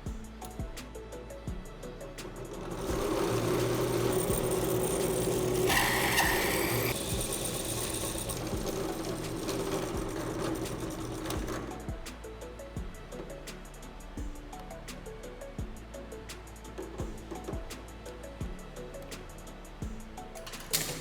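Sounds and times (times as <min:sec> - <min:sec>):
higher-pitched tool sound: 0:02.6 - 0:11.6
power tool motor humming: 0:02.6 - 0:11.9.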